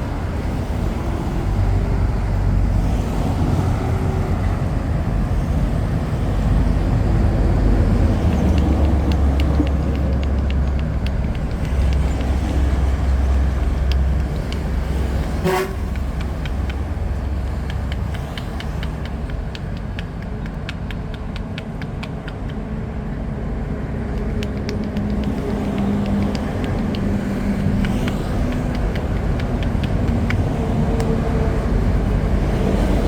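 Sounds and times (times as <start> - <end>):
engine hum: 0.0 - 33.0
passing vehicles rumbling: 0.0 - 33.0
light clicks or taps: 8.2 - 22.7, 24.1 - 31.3.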